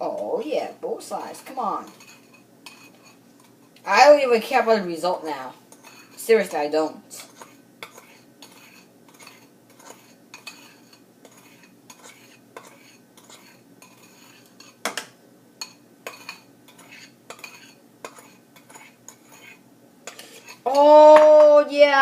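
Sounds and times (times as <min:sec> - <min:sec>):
spoon clinking and scraping container: 0:16.1 - 0:20.6.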